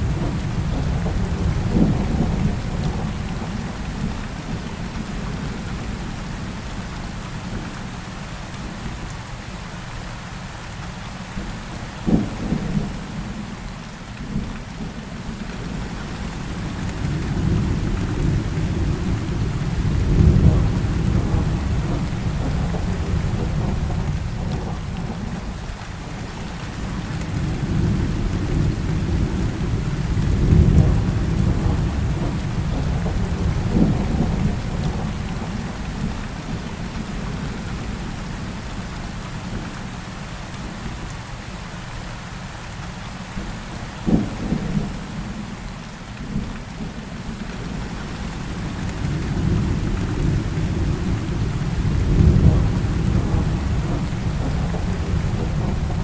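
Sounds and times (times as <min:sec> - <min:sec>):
thunder rumbling: 0:00.0 - 0:04.7, 0:15.7 - 0:38.1, 0:47.6 - 0:56.0
heavy rain: 0:00.0 - 0:56.0
thunder crack: 0:49.1 - 0:56.0.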